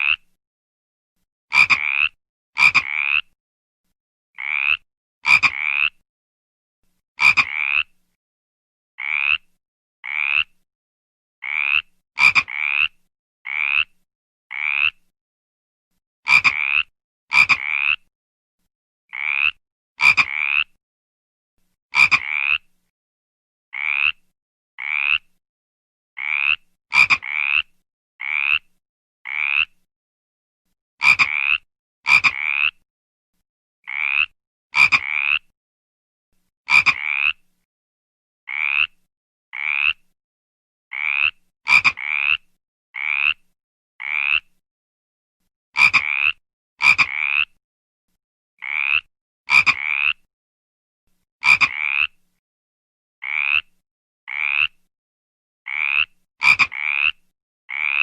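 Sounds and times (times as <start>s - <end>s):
frog calling: 4.4s - 5.9s, 11.4s - 12.8s, 14.5s - 15.0s, 19.1s - 20.7s, 23.8s - 24.2s, 26.2s - 27.6s, 29.3s - 29.8s, 31.0s - 32.7s, 33.9s - 35.4s, 36.7s - 37.4s, 38.5s - 38.9s, 39.6s - 40.0s, 40.9s - 42.4s, 43.0s - 43.4s, 44.0s - 44.4s, 45.8s - 47.5s, 48.6s - 50.2s, 51.4s - 52.1s, 53.2s - 53.7s, 54.3s - 54.7s, 55.7s - 57.1s, 57.7s - 58.0s.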